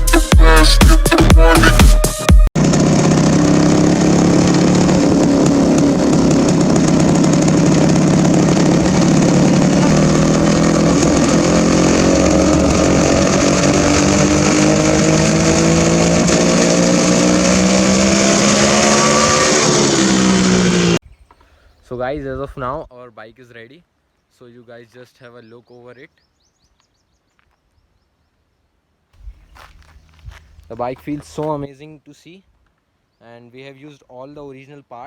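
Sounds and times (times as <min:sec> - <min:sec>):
two-stroke motorcycle engine running: 0:02.6 - 0:21.0, 0:29.6 - 0:31.6.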